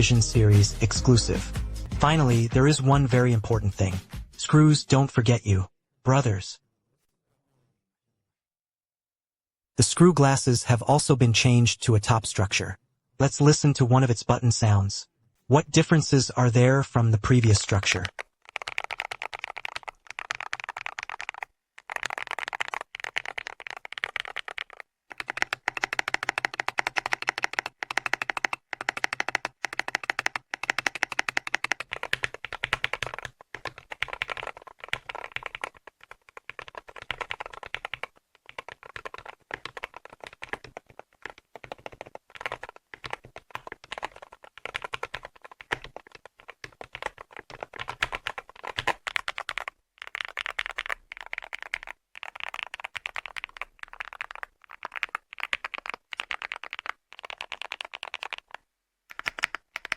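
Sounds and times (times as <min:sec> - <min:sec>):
mechanical keyboard typing: 0:17.6 - 0:59.9.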